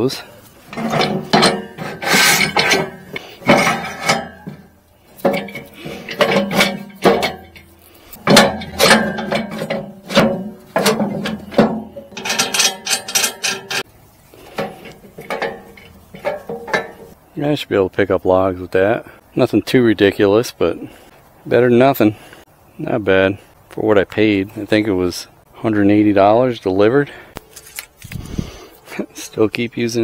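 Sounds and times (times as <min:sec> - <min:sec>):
metal clanks with ringing: 0:00.1 - 0:13.8, 0:14.5 - 0:17.2.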